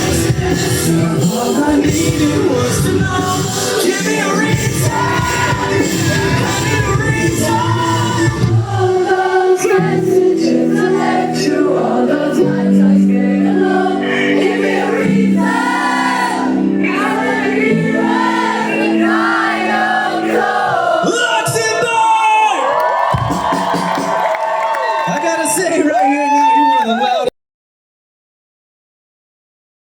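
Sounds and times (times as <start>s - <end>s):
live rock band playing: 0.0s - 21.0s, 23.1s - 24.6s
wordless singing: 0.0s - 21.6s.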